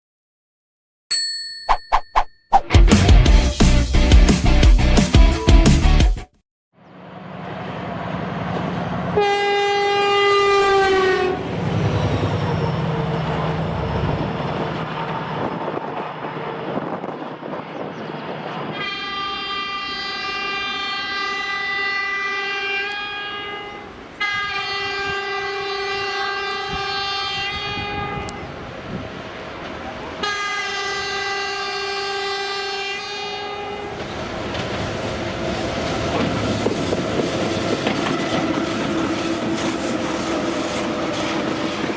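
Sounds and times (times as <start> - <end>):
rumble of moving train: 6.8 - 41.9
train horn blasts: 9.1 - 11.6, 18.7 - 28.6, 30.2 - 33.9.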